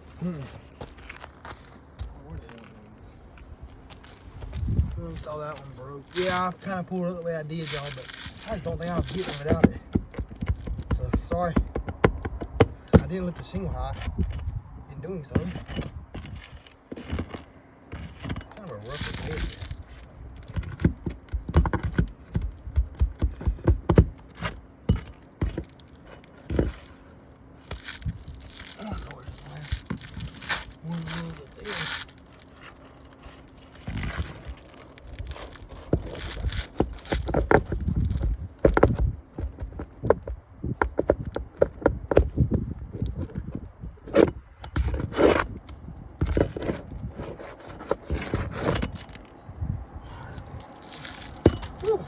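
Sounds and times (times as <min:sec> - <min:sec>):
metal tool scraping shingles: 0:05.6 - 0:11.6, 0:15.2 - 0:39.0, 0:46.2 - 0:49.3, 0:50.8 - 0:52.0
knocks on roof shingles: 0:08.2 - 0:13.4, 0:20.4 - 0:25.8, 0:35.7 - 0:42.6.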